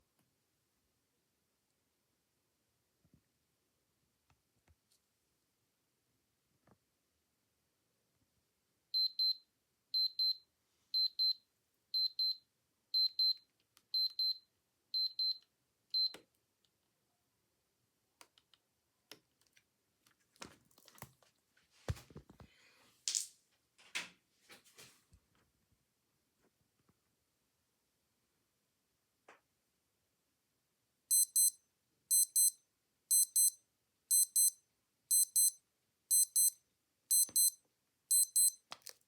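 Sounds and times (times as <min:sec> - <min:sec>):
digital watch alarm beeping: 0:09.0 - 0:09.4, 0:10.0 - 0:10.4, 0:15.0 - 0:15.4, 0:31.1 - 0:38.6
clicks and handling rustles: 0:19.1 - 0:22.5, 0:38.6 - 0:39.0.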